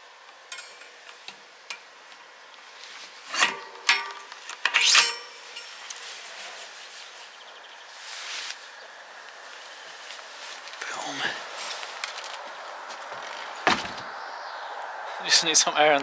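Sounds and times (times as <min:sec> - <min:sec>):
metal bicycle parts clinking: 0:00.5 - 0:02.2, 0:03.2 - 0:06.7.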